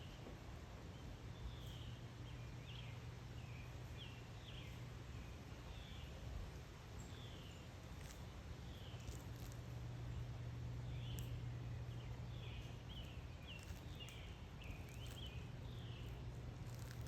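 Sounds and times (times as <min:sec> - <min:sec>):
low outdoor hum: 0:00.0 - 0:17.0
bird chirping: 0:08.7 - 0:17.0.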